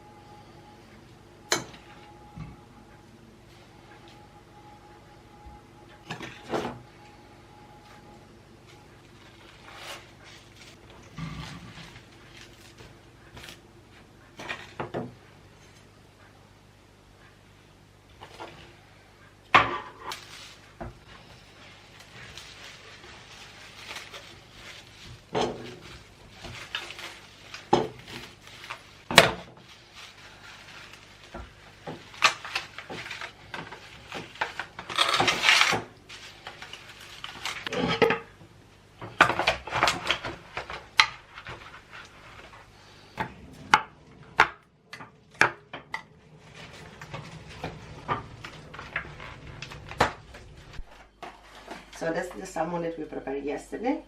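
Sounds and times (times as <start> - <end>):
dishes and utensils clattering: 25.2 - 27.1, 37.4 - 38.4.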